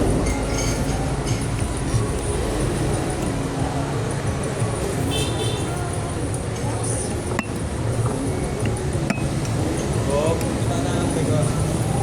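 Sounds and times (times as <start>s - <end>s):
light clinks: 7.3s - 9.8s.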